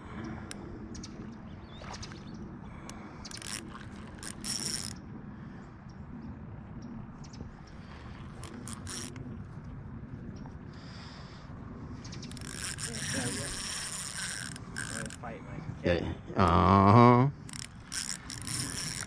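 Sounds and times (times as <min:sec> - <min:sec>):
fishing reel ratcheting whir: 0:03.3 - 0:05.0, 0:08.4 - 0:09.2, 0:12.3 - 0:15.4, 0:17.4 - 0:19.0.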